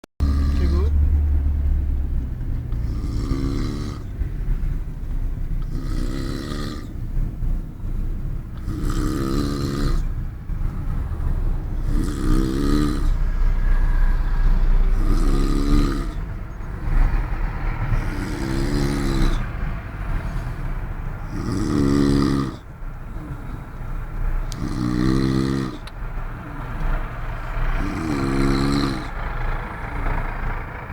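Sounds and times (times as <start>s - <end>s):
man snoring: 0.2s - 0.9s, 2.8s - 4.1s, 5.6s - 6.9s, 8.6s - 10.1s, 11.8s - 13.2s, 14.9s - 16.2s, 18.0s - 19.4s, 21.2s - 22.6s, 24.5s - 25.9s, 27.8s - 29.2s
car road rumble: 0.2s - 30.9s.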